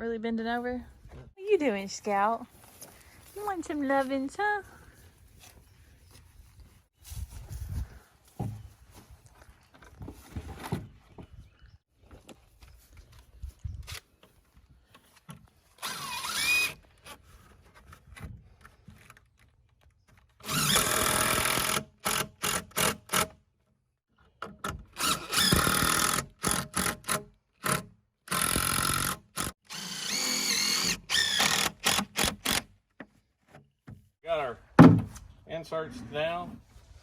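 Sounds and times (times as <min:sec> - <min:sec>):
power drill driving screws: 0:15.8 - 0:16.8, 0:20.4 - 0:23.2, 0:25.0 - 0:32.6.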